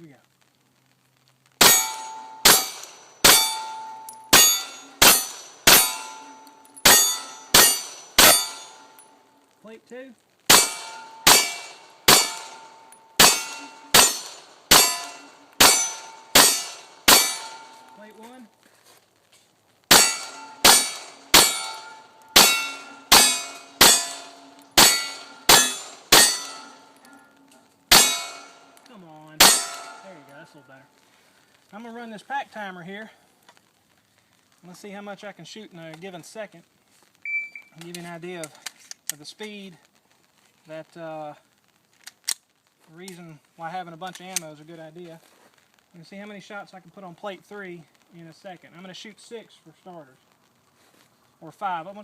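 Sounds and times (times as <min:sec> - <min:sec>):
bullet clanging on steel plate: 0:01.6 - 0:09.1, 0:10.5 - 0:18.0, 0:19.9 - 0:30.3
pistol shots: 0:10.5 - 0:17.9, 0:19.9 - 0:27.0, 0:29.4 - 0:30.2.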